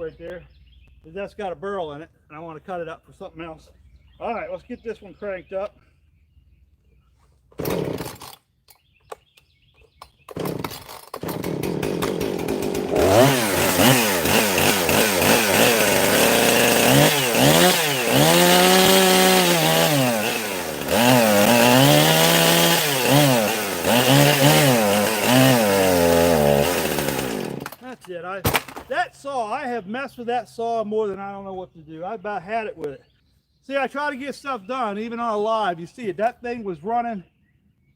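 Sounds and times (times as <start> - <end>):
chainsaw starting and running: 7.5 - 8.5, 10.2 - 27.9.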